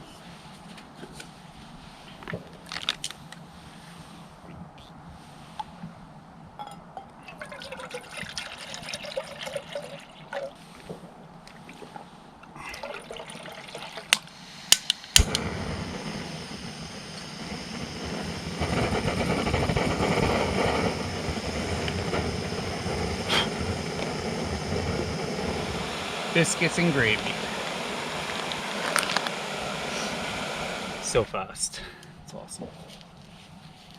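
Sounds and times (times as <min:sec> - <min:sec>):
igniter clicks: 0:14.1 - 0:15.6
stove burner hissing: 0:14.1 - 0:32.5.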